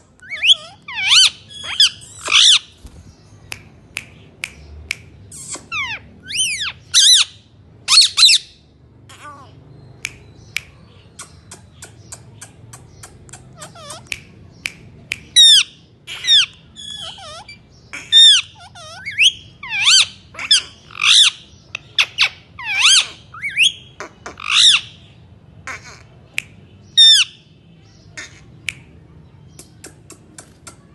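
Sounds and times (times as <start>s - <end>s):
parrot squawking: 0.2s - 2.8s, 5.4s - 9.6s, 13.0s - 14.2s, 15.4s - 25.0s, 25.6s - 26.1s, 27.0s - 27.4s.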